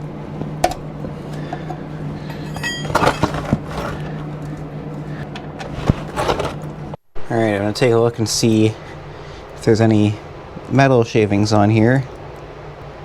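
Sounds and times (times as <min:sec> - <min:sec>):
steady low hum: 0:00.0 - 0:13.0
metal tools clinking: 0:01.5 - 0:04.2
ringing clink: 0:02.3 - 0:03.0.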